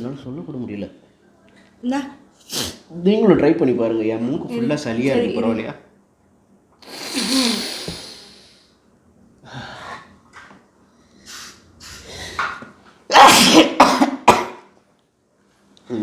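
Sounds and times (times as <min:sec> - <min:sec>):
person sneezing: 0:06.8 - 0:08.5, 0:13.1 - 0:14.7
person breathing: 0:06.8 - 0:08.8.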